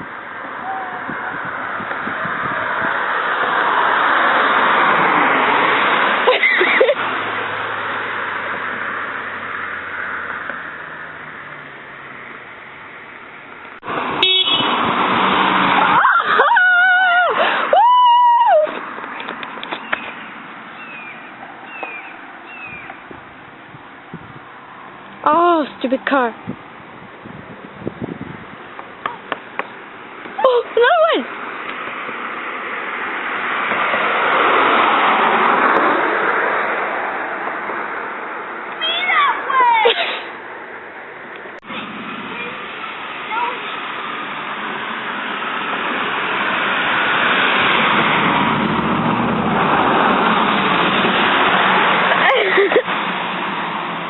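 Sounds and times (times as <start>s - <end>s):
car passing close by: 0.0s - 12.7s, 13.8s - 23.5s, 31.2s - 54.0s
car horn toot: 14.2s - 14.8s
people cheering and squealing: 15.8s - 18.8s.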